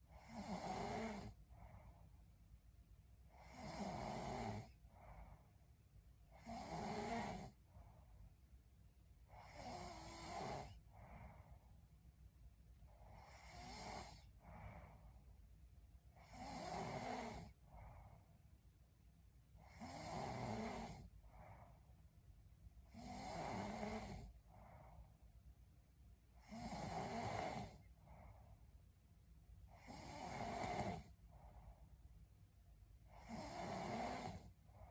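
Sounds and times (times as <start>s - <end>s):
faint breathing: 0.0s - 2.3s, 4.6s - 5.8s, 6.4s - 8.4s, 9.2s - 12.0s, 12.8s - 18.6s, 20.5s - 22.2s, 22.8s - 25.4s, 26.3s - 28.8s, 29.6s - 32.2s
woman snoring: 0.1s - 1.4s, 3.3s - 5.2s, 6.3s - 7.6s, 9.3s - 11.3s, 13.0s - 14.8s, 16.2s - 17.9s, 19.6s - 21.6s, 22.8s - 24.8s, 26.4s - 27.9s, 29.7s - 31.2s, 33.1s - 34.6s.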